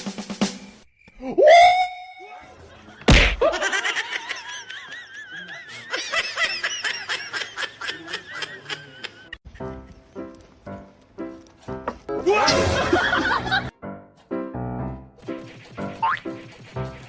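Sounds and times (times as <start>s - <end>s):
people laughing: 2.4s - 9.9s, 12.2s - 13.8s.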